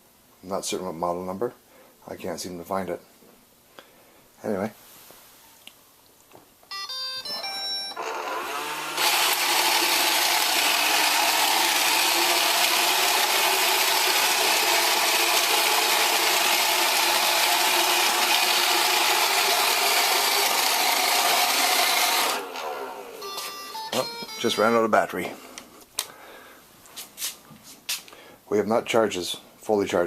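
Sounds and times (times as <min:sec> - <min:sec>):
robot vacuum beeps: 0:06.7 - 0:09.0, 0:23.2 - 0:24.8
robot vacuum whirring: 0:07.9 - 0:23.3.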